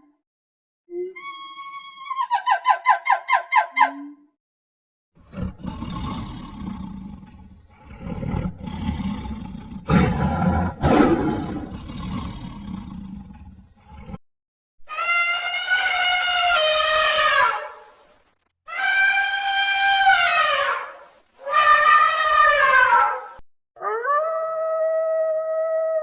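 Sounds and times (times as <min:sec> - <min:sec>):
tiger roaring and growling: 0:05.2 - 0:14.2.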